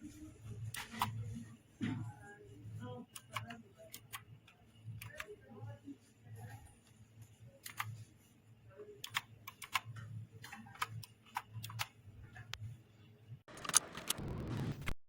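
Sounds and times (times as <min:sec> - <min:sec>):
mechanical keyboard clicks: 0:09.0 - 0:11.9, 0:13.5 - 0:14.3.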